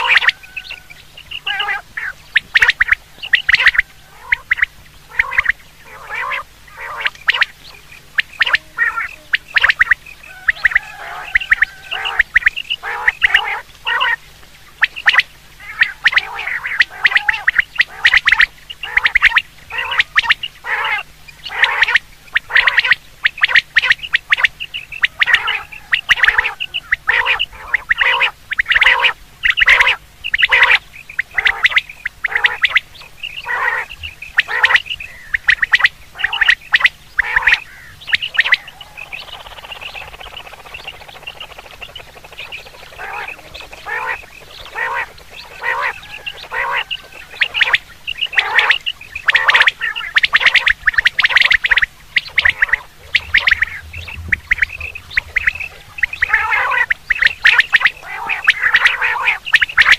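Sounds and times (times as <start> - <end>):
quail calling: 0.0 - 59.9.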